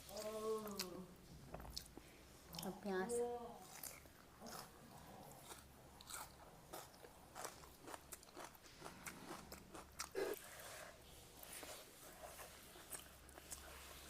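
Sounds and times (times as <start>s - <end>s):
person chewing food: 3.6s - 10.6s, 11.4s - 14.0s.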